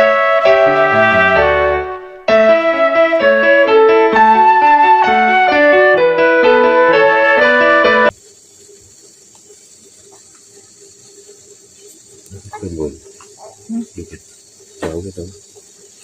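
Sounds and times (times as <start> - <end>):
background music melody: 0.0 - 8.1.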